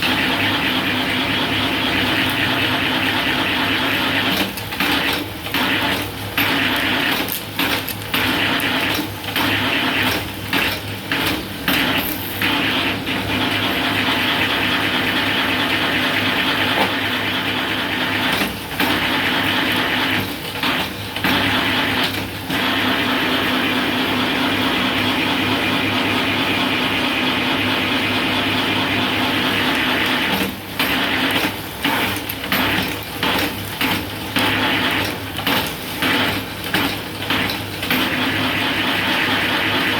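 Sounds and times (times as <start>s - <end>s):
bamboo strips being shaved: 2.0s - 12.7s, 29.8s - 36.9s.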